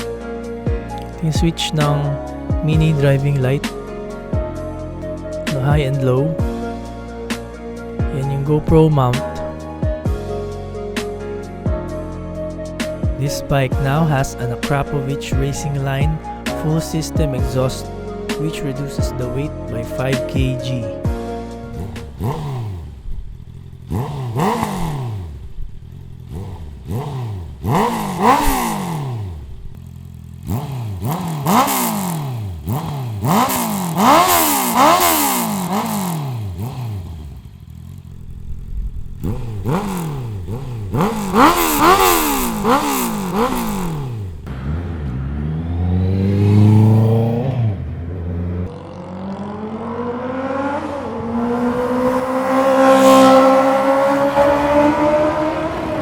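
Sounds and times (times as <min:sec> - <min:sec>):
motorcycle engine revving: 0:00.0 - 0:12.2, 0:12.8 - 0:56.0.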